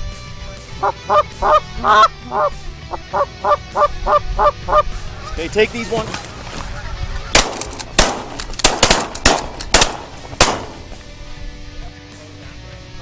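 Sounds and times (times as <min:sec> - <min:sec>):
shotgun blasts with echo: 0:07.3 - 0:11.0.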